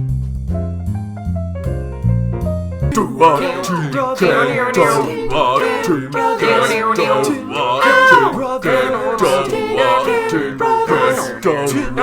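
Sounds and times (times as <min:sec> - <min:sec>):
men singing a cappella: 0:02.9 - 0:12.0.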